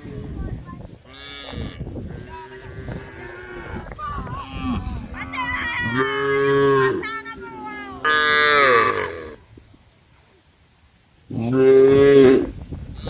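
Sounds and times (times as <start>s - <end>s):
cows mooing: 1.1s - 9.4s, 11.3s - 12.5s.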